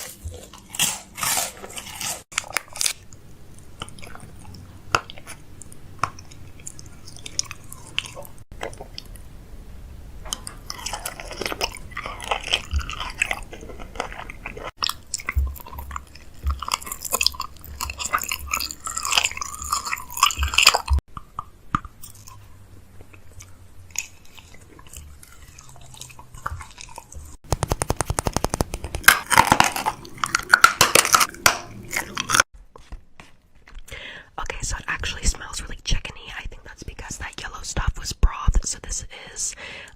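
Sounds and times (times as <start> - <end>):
chewing and crunching food: 0.0 - 9.3, 10.3 - 34.1
rapid clicks: 27.4 - 29.5.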